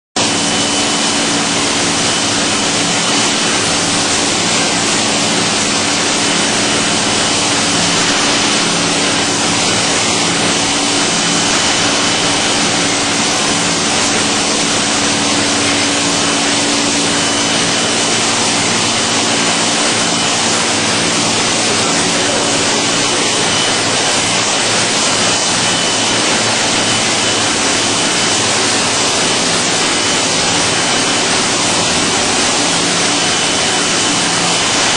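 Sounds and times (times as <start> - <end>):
faint high whine: 0.2 - 34.9
low motor hum: 0.2 - 34.9
washing machine rushing noise: 0.2 - 34.9.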